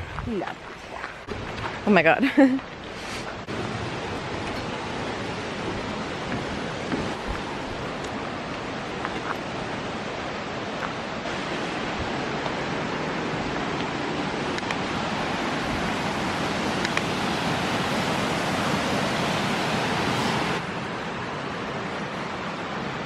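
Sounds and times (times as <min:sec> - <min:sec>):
waterfall rushing: 0:02.9 - 0:23.0.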